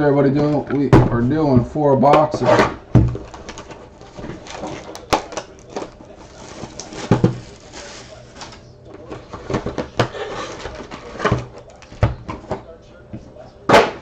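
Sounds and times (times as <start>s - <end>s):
packaging rustling: 3.1s - 12.0s.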